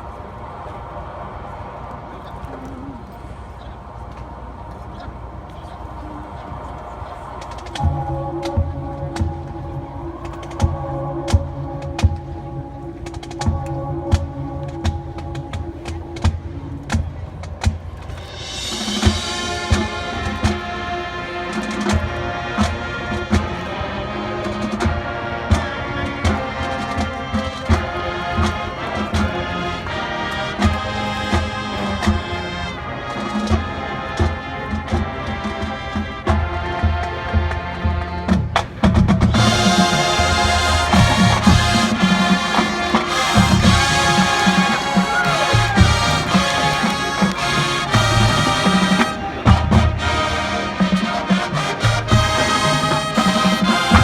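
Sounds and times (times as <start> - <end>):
marching band playing: 3.2 - 54.0
brass chords: 18.3 - 54.0
bass drum beat: 38.7 - 42.6, 43.2 - 50.7.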